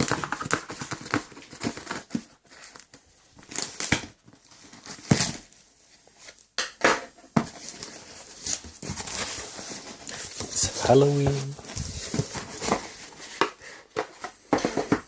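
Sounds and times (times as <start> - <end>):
packaging crinkling and tearing: 0.0 - 5.6, 7.6 - 13.8.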